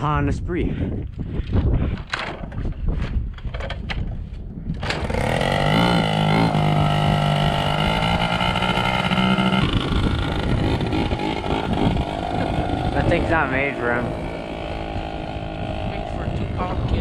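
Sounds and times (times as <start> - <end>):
rumbling wind noise: 0.0 - 17.0
scooter engine buzzing: 4.8 - 17.0.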